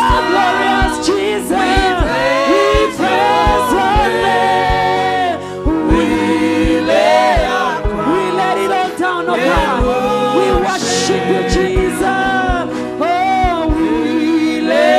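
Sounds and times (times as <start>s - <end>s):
kick drum thumping: 0.0s - 8.7s, 9.5s - 10.8s
gospel worship music: 0.0s - 14.9s.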